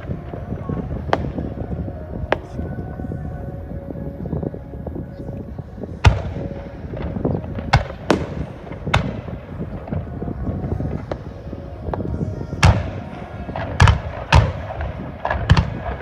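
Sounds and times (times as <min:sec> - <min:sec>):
fireworks bangs with echo: 0:00.0 - 0:03.0, 0:05.4 - 0:16.0
continuous low rumble: 0:00.0 - 0:16.0.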